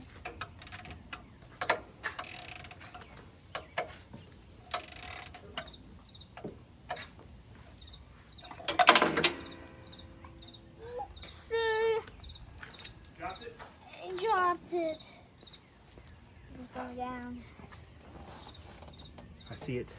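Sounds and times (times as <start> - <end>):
metal wrench clicking and scraping: 0.2 - 3.9, 4.6 - 7.1, 8.4 - 10.6
wrench clattering into machine: 8.4 - 10.5.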